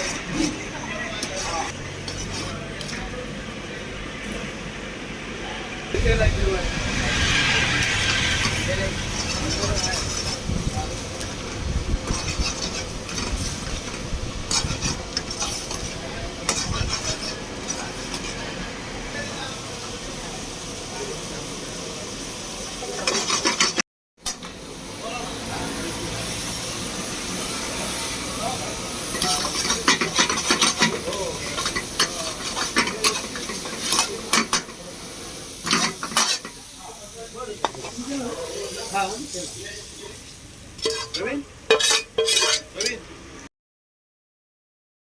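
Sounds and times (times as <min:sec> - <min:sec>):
prawns sizzling: 0:00.0 - 0:43.2
spoon scraping a pan: 0:01.2 - 0:02.6, 0:07.4 - 0:10.5, 0:12.0 - 0:18.4, 0:23.0 - 0:23.8, 0:29.1 - 0:34.8, 0:35.6 - 0:36.7, 0:40.8 - 0:43.0.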